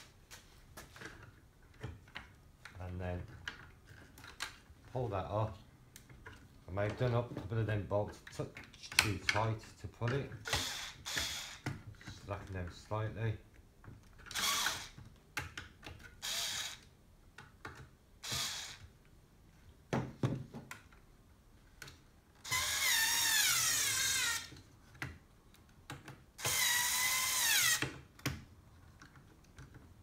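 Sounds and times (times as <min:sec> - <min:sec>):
small electric screwdriver whining: 0:10.4 - 0:11.7, 0:14.3 - 0:15.0, 0:16.2 - 0:16.9, 0:18.2 - 0:18.9, 0:22.4 - 0:24.6, 0:26.4 - 0:28.0.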